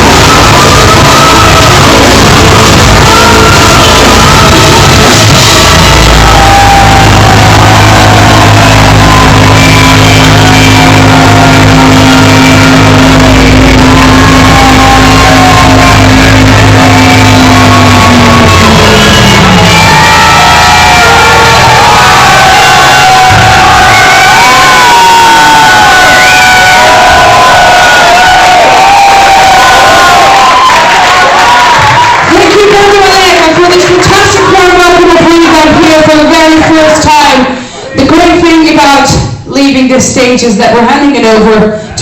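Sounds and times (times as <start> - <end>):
live heavy metal band: 0.0 - 30.6.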